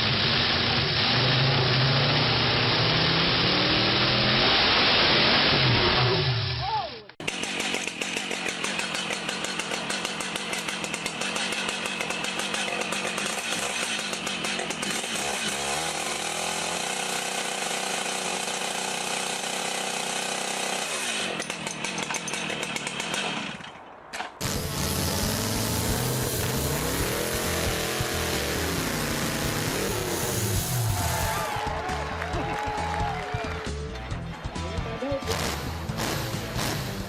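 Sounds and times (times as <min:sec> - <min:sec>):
different engine sound: 0:00.0 - 0:06.6, 0:07.2 - 0:32.6, 0:33.7 - 0:37.0
chainsaw engine running: 0:07.2 - 0:23.7, 0:24.4 - 0:32.6, 0:35.2 - 0:37.0.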